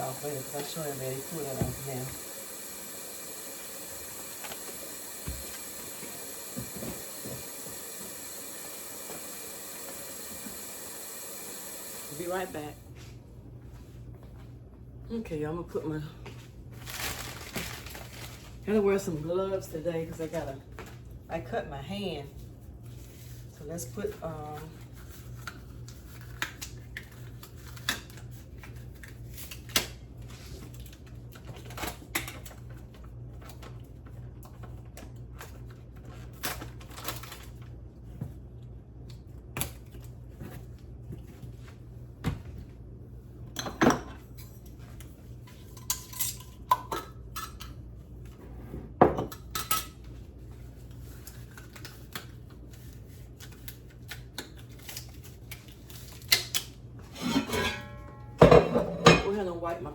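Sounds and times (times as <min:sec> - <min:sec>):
dishes and utensils clattering: 0:57.1 - 0:59.4.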